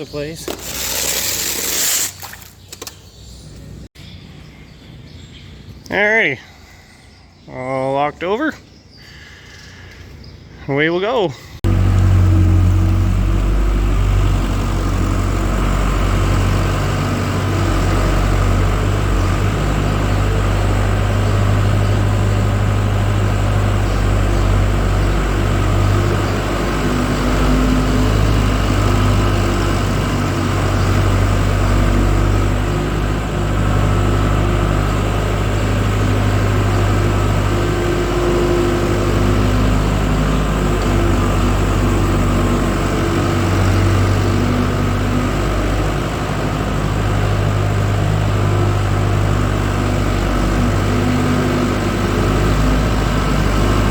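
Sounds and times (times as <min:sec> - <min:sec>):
farm machine engine running: 0:11.6 - 0:53.9.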